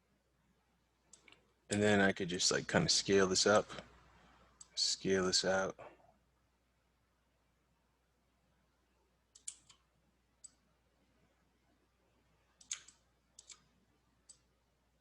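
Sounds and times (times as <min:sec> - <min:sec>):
computer mouse clicking: 0:01.1 - 0:01.8, 0:09.3 - 0:10.6, 0:12.6 - 0:14.5.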